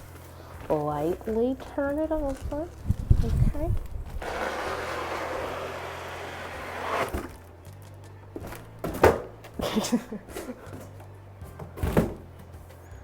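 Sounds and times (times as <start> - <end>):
box knocks and thunks: 8.4 - 10.8, 11.5 - 12.4.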